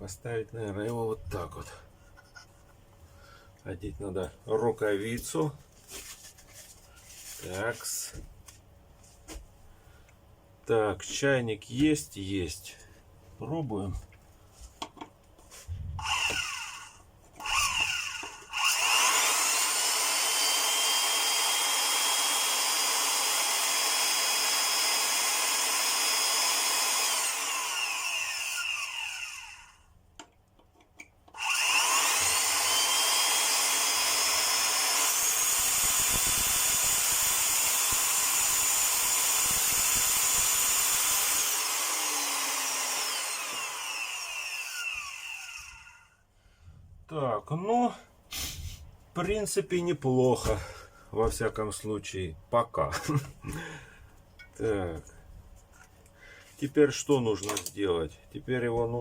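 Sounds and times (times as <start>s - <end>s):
vacuum cleaner motor whining: 16.0s - 29.7s, 31.4s - 45.9s.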